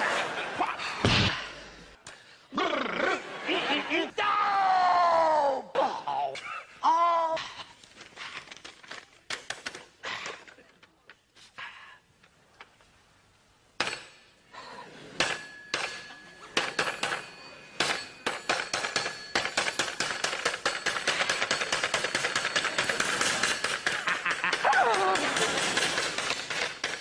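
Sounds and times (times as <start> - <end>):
knocks and metallic clangs: 13.8 - 27.0.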